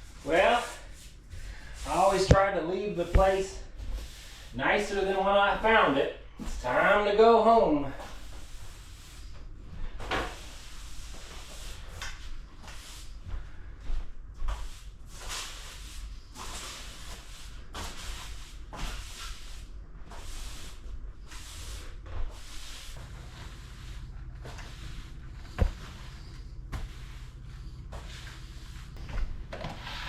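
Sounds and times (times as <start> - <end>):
scraping and rubbing sounds: 0.0 - 5.9, 14.5 - 30.0
steady low rumble: 22.9 - 29.6.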